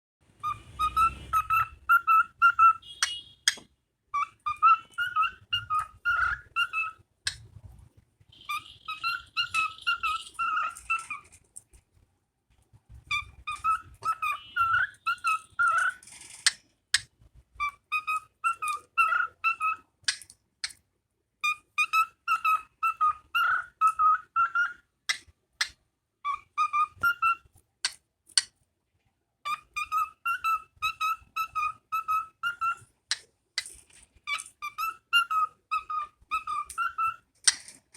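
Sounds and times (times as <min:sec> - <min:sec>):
bird whistling song: 0:00.4 - 0:07.4, 0:08.3 - 0:11.4, 0:13.1 - 0:16.0, 0:17.6 - 0:19.9, 0:21.4 - 0:24.8, 0:26.3 - 0:27.5, 0:29.5 - 0:33.2, 0:34.3 - 0:37.3
bird chips: 0:08.3 - 0:11.8.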